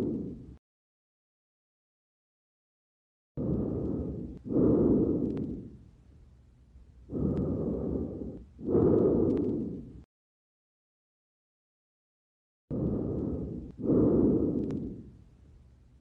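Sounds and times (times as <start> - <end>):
breathing through a stethoscope: 0.0 - 0.6, 3.4 - 5.9, 7.1 - 10.1, 12.7 - 15.3.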